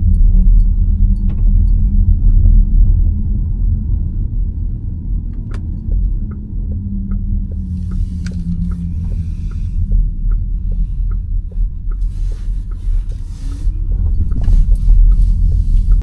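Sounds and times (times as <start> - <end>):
road and tyre rumble: 0.0 - 16.0
light ticking: 5.3 - 16.0.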